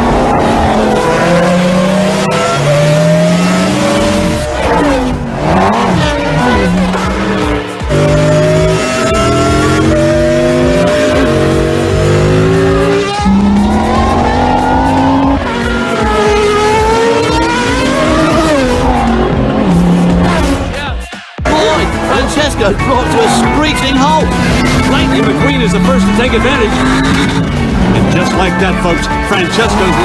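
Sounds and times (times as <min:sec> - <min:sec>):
race car engines revving: 0:00.0 - 0:30.0
tires squealing: 0:00.0 - 0:30.0.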